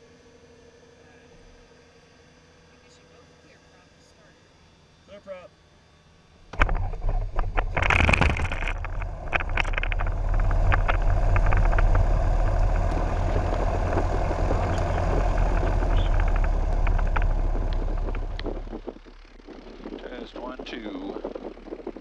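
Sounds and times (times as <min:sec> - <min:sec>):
aircraft engine starting and idling: 0:06.6 - 0:21.3.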